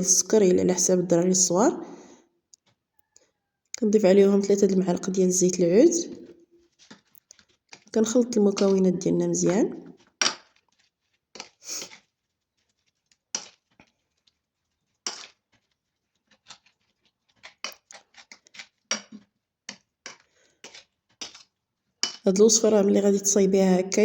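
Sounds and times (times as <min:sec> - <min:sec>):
spoon stirring wet mixture: 0:00.0 - 0:24.0.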